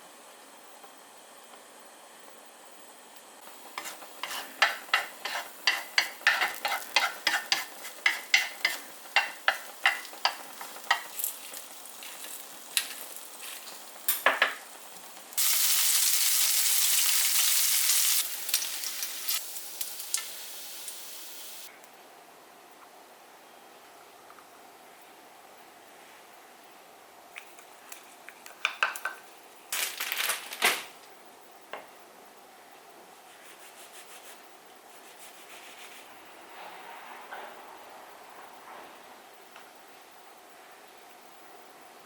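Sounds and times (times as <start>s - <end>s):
food sizzling in a hot pan: 3.5s - 21.7s
eggs beaten in a bowl: 3.8s - 11.6s.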